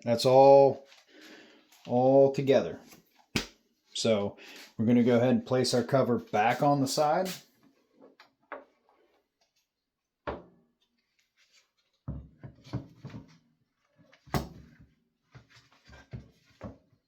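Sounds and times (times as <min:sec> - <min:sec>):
plastic cover clattering and knocking: 0:12.0 - 0:13.3.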